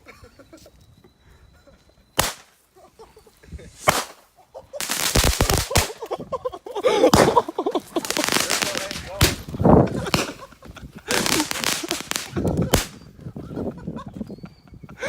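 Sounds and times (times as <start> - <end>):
firecracker bangs: 2.2 - 2.5, 3.8 - 4.2, 4.8 - 6.0, 7.1 - 10.4, 11.1 - 13.0
firecrackers popping rapidly: 2.2 - 2.6, 3.7 - 6.2, 7.0 - 13.2.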